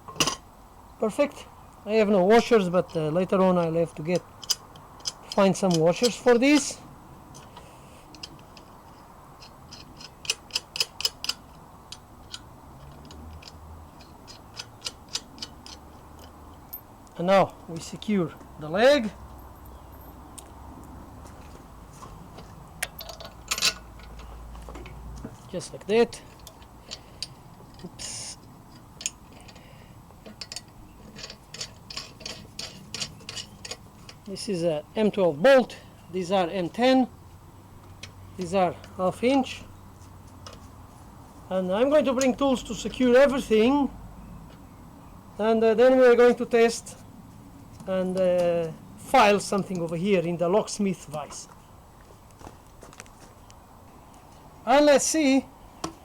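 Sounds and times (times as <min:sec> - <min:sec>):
light metallic clicks and taps: 0:04.1 - 0:06.7, 0:07.3 - 0:08.7, 0:09.4 - 0:17.2, 0:28.7 - 0:34.4, 0:37.8 - 0:39.0, 0:40.3 - 0:40.8, 0:55.8 - 0:56.0
scraping rattle: 0:30.3 - 0:34.3.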